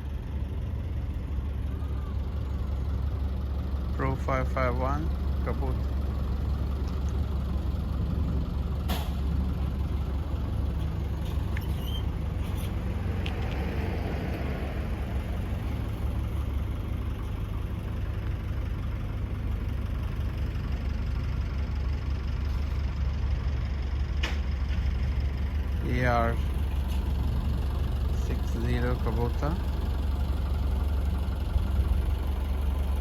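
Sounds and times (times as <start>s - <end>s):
diesel engine idling: 0.0s - 33.0s.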